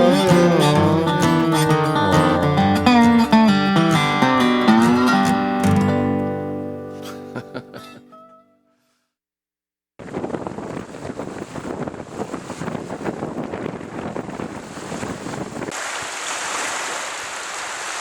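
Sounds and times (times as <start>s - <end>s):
strong wind buffeting microphone: 10.0s - 15.8s.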